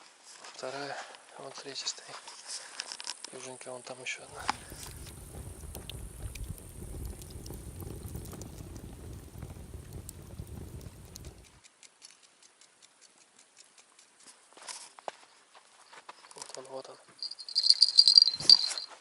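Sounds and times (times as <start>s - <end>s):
faint scattered ticks: 2.0s - 19.0s
night insects trilling: 3.4s - 11.6s, 17.2s - 19.0s
low rumble: 4.3s - 11.6s.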